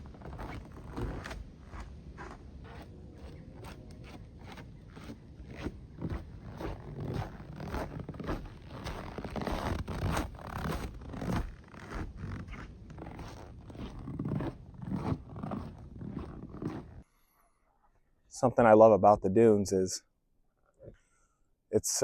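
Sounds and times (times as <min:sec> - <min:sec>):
footsteps scraping on trail: 0:00.0 - 0:17.0.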